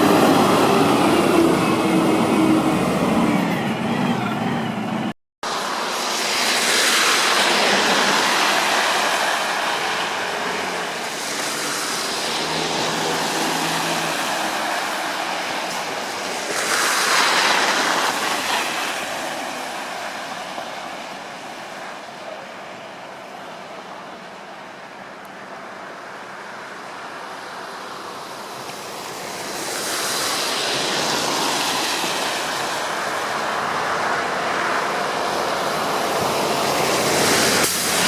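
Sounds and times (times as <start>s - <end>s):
tyres hissing on wet road: 0.0s - 3.3s, 5.4s - 38.0s.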